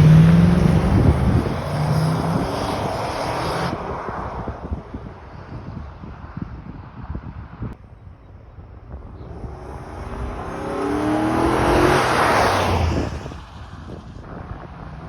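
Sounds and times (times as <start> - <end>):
truck accelerating past: 0.0 - 3.8, 8.8 - 14.0.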